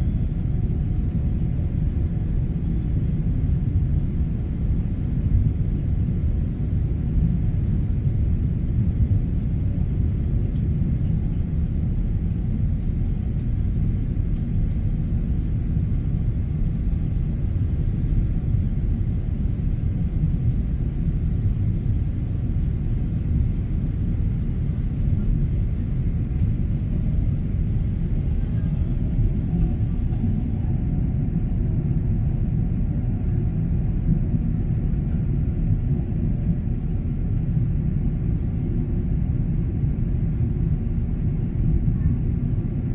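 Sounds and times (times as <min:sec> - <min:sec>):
jet engines rumbling: 0:00.0 - 0:42.9.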